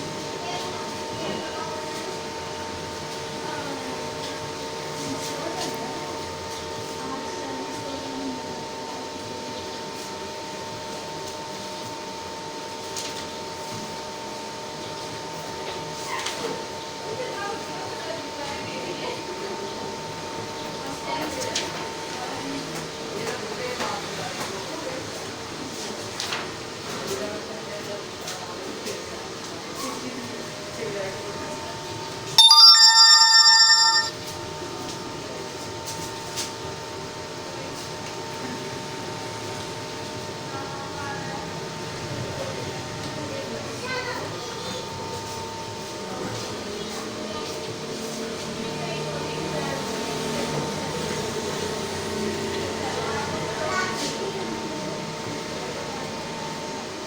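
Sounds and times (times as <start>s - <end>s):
electronic chime: 32.4s - 34.1s.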